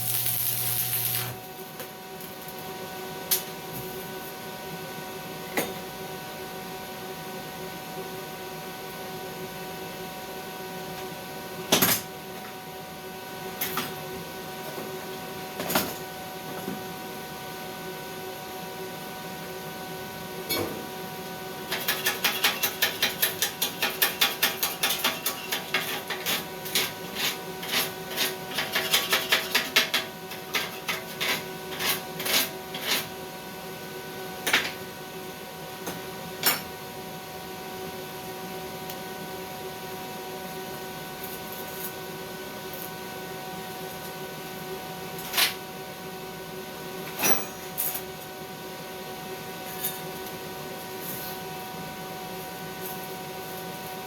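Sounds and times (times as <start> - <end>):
electrical hum: 0.0 - 2.7.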